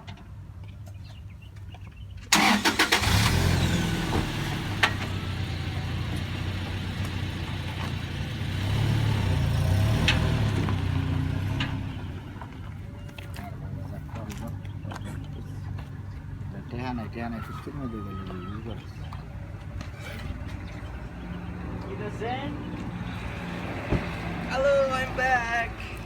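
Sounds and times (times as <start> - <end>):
car engine cranking and running: 2.3 - 13.3.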